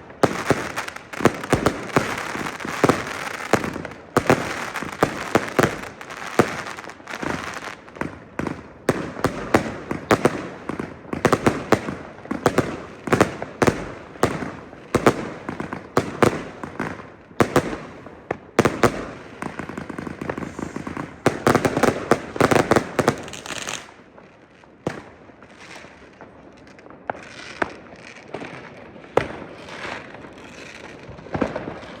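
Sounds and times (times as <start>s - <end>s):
constant crackle: 0.0s - 10.0s, 23.1s - 32.0s
fireworks bursting: 0.0s - 32.0s.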